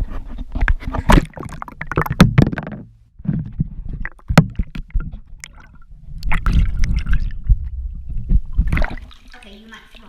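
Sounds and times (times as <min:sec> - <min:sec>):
camera housing knocks in water: 0:02.0 - 0:02.9, 0:04.3 - 0:04.9.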